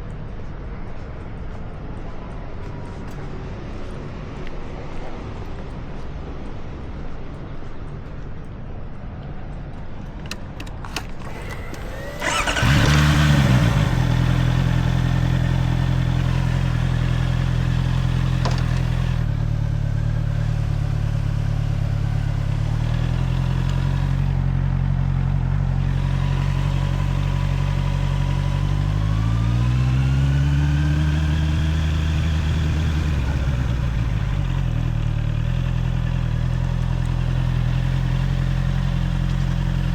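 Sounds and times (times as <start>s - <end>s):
motorcycle engine idling: 11.3s - 39.9s
motorcycle engine revving: 11.3s - 39.9s.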